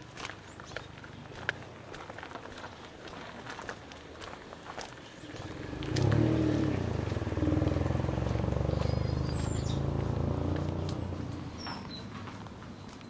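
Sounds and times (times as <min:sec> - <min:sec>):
vehicle engine passing by: 0:05.2 - 0:12.7
high bird chirps: 0:08.6 - 0:10.2, 0:11.5 - 0:12.1.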